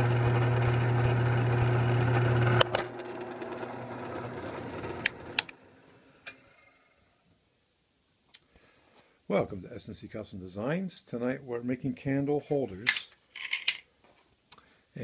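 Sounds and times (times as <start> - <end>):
drill press motor humming: 0.0 - 5.6.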